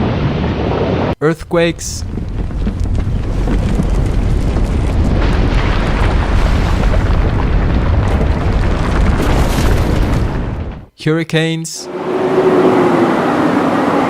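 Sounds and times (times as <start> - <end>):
crumbling noise: 0.0 - 10.9
deep earthquake rumble: 0.0 - 10.9.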